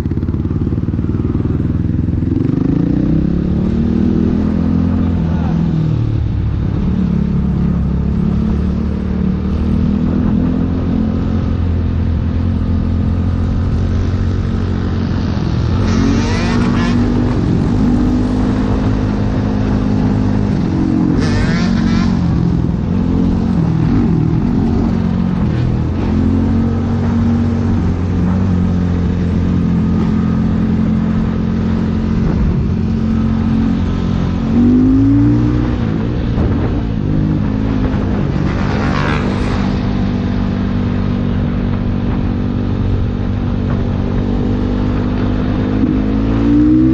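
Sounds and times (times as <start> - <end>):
motorcycle engine running: 0.0 - 34.8.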